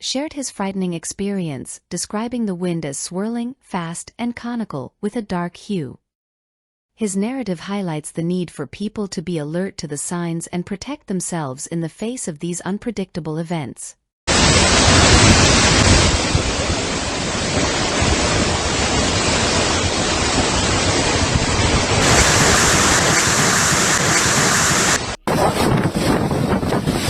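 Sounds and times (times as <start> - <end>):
strong wind buffeting microphone: 14.3 - 27.0.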